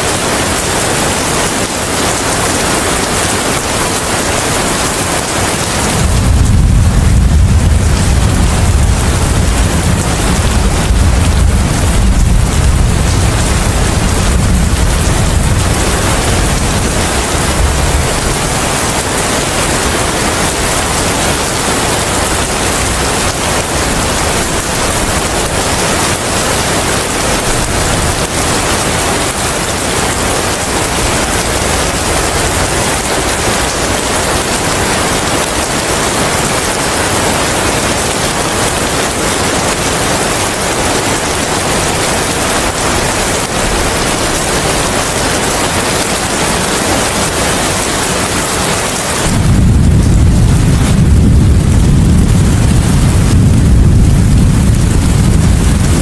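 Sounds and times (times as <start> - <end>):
heavy rain: 0.0 - 56.0
wind: 0.0 - 56.0
low rumble of thunder: 5.6 - 34.6, 48.6 - 56.0.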